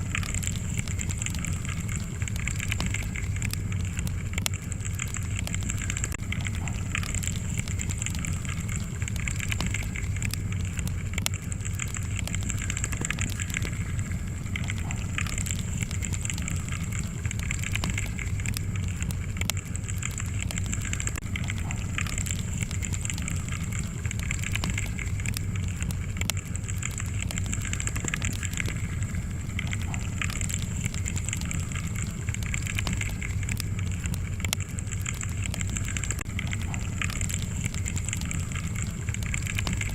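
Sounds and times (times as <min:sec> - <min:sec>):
fire crackling in fireplace: 0:00.0 - 0:39.9.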